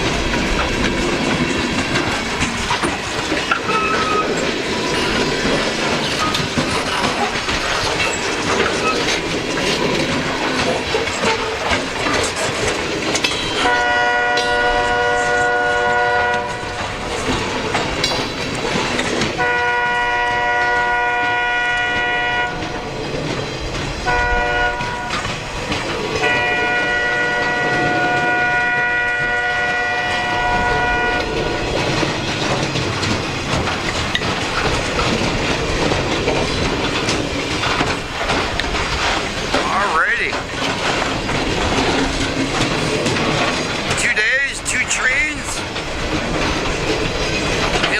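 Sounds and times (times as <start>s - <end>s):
freight train rumble: 0.0s - 47.9s
train wheel clatter: 0.0s - 47.9s
locomotive air horn: 13.6s - 16.8s, 19.4s - 22.6s, 24.1s - 25.2s, 26.2s - 31.3s.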